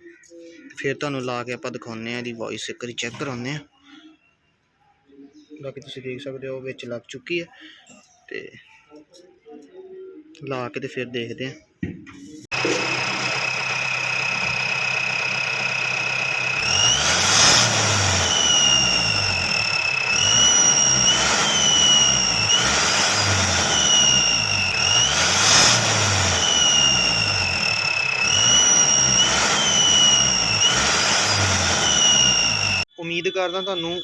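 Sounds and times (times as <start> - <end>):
diesel engine idling and revving: 12.5 - 32.9
high turbo whistle: 12.5 - 34.0.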